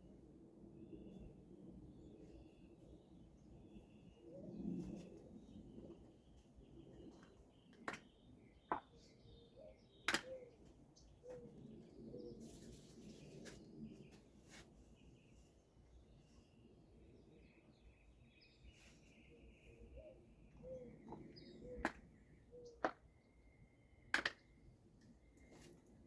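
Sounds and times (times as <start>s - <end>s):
birds chirping: 2.1s - 14.2s, 15.0s - 25.6s.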